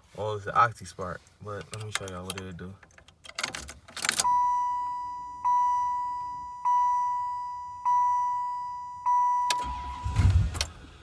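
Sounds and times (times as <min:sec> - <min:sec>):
car dashboard warning chime: 0:04.2 - 0:10.2.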